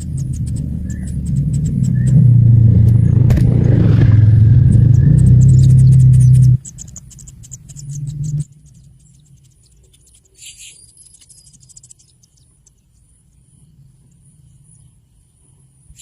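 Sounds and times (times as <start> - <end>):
bird call: 0.0 - 2.3
low hum: 0.0 - 10.2
insects trilling: 0.0 - 16.0.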